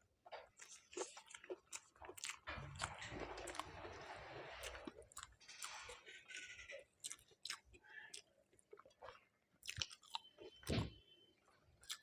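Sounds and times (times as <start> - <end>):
crunchy chewing: 0.3 - 10.8, 11.8 - 12.0
mouth clicks and bites: 7.0 - 10.9.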